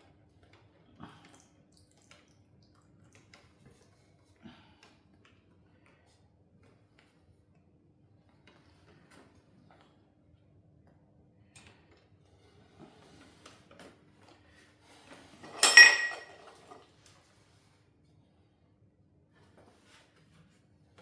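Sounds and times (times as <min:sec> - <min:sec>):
loud metallic clatter with ringing: 0:15.5 - 0:16.4.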